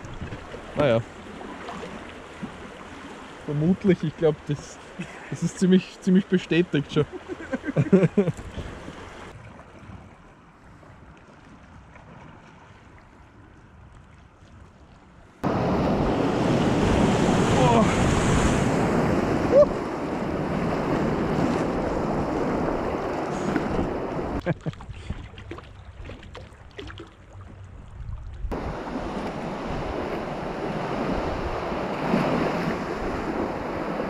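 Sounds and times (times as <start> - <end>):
wind buffeting microphone: 0.0 - 0.6
river water rushing: 15.4 - 24.4, 28.5 - 34.0.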